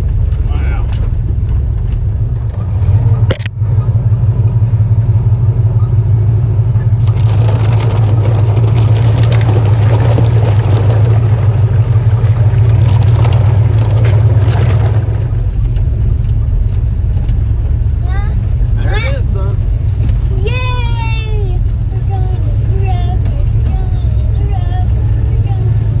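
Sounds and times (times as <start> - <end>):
engine running with low hum: 0.0 - 26.0.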